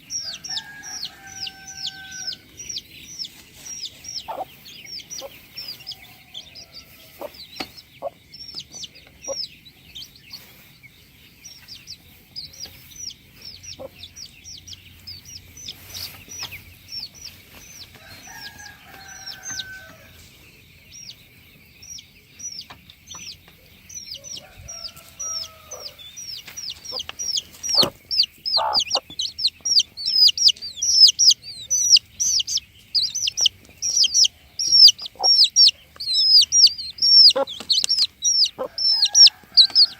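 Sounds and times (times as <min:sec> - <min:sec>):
chickens clucking: 0:00.0 - 0:39.9
chicks chirping: 0:00.0 - 0:39.9.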